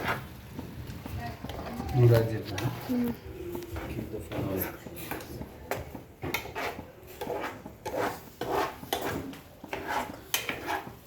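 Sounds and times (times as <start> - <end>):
utensil scraping a pan: 0.0 - 0.8, 3.6 - 11.0.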